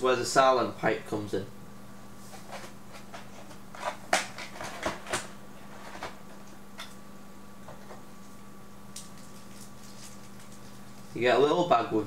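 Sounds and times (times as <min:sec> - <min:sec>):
low electrical hum: 0:00.0 - 0:12.0
clicks and rustles of handling: 0:09.0 - 0:11.2.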